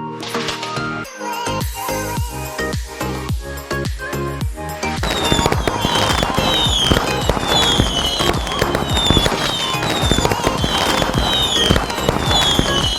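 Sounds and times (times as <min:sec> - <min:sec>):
firecrackers banging: 0:05.0 - 0:12.9
music with falling high tone: 0:05.0 - 0:12.9.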